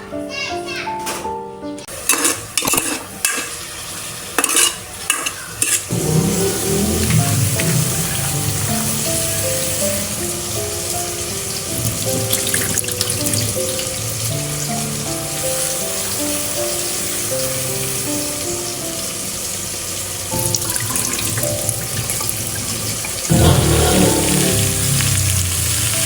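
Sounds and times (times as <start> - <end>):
gentle background music: 0.0 - 2.3, 5.9 - 26.0
kitchen hiss: 1.9 - 26.0
sudden burst of noise: 5.9 - 12.2, 23.3 - 26.0.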